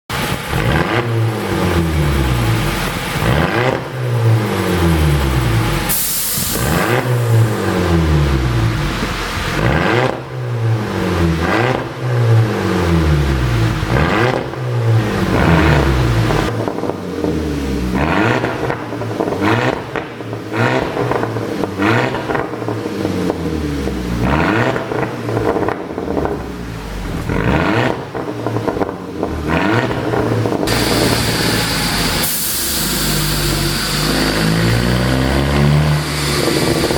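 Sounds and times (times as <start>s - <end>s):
car engine revving: 0.1s - 36.9s
exhaust pops and crackles: 13.6s - 32.4s.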